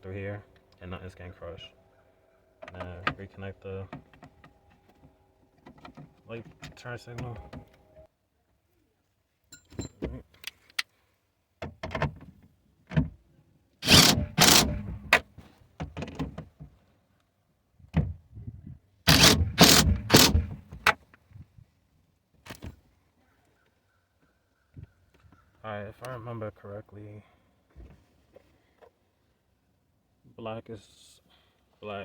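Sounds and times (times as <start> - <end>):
rattling and knocking: 13.8 - 15.2, 19.1 - 20.9.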